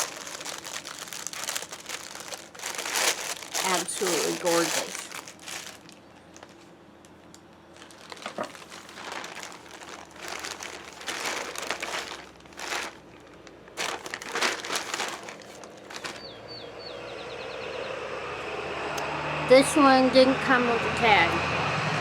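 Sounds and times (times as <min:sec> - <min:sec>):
gift wrapping crinkling: 0:00.0 - 0:16.4
steady hum: 0:00.0 - 0:22.0.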